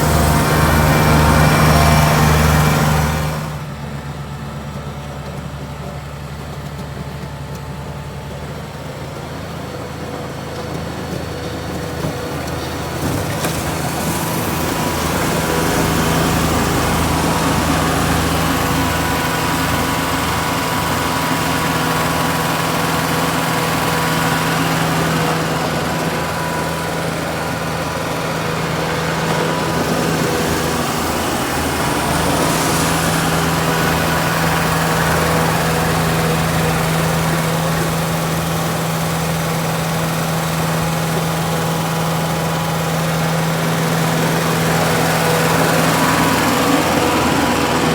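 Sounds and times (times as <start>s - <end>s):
tractor engine running: 0.0s - 47.9s.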